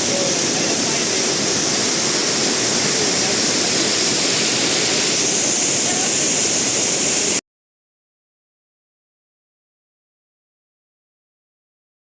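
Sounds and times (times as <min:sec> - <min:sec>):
waterfall rushing: 0:00.0 - 0:07.4.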